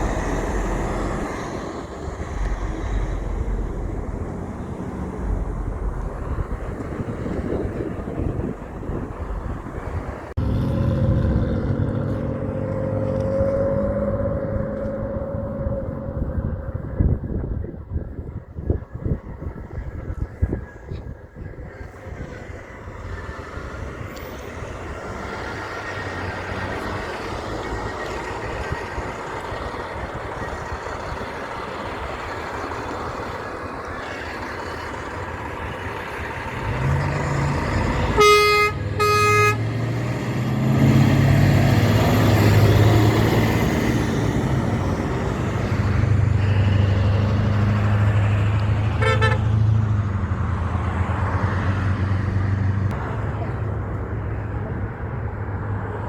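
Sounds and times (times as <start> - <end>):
truck passing: 0.0 - 56.0
truck horn blasts: 36.6 - 40.1, 48.8 - 49.8
faint horn toot: 38.0 - 39.7, 48.9 - 49.6.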